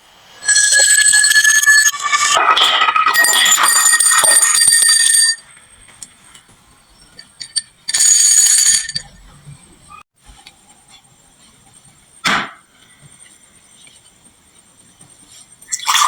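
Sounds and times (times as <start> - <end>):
marbles ringing and clinking: 0.5 - 5.5, 7.2 - 9.1
marbles clattering through wooden run: 2.8 - 5.3.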